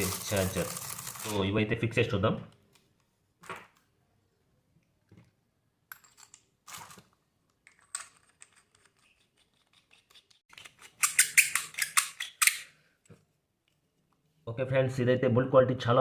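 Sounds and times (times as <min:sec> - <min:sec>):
small parts clicking and scraping: 0:00.0 - 0:01.4, 0:05.9 - 0:12.7.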